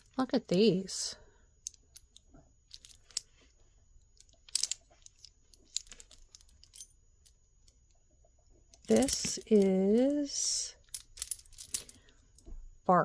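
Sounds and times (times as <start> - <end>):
metal jewelry clicking: 4.1 - 8.0, 8.7 - 12.5.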